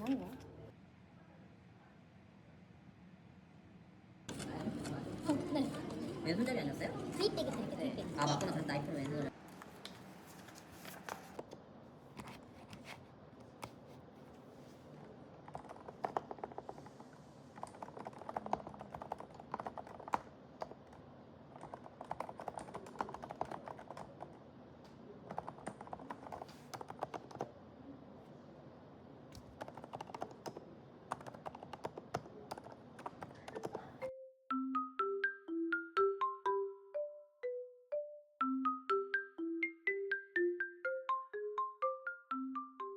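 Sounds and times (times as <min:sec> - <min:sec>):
typing on computer keyboard: 0:15.4 - 0:17.0, 0:17.6 - 0:24.4, 0:25.2 - 0:27.5, 0:29.4 - 0:34.0.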